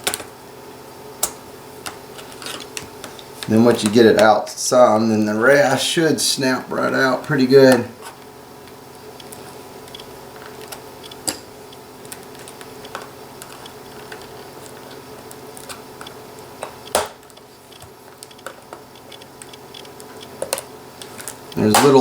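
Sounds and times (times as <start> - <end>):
steady low hum: 0.0 - 22.0
plastic clicks and ticks: 9.2 - 14.3.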